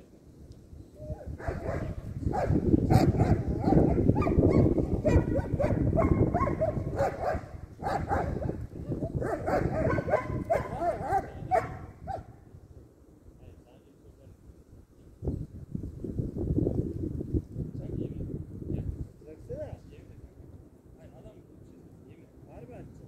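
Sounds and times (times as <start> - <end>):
dogs whining and yipping: 2.9 - 8.2.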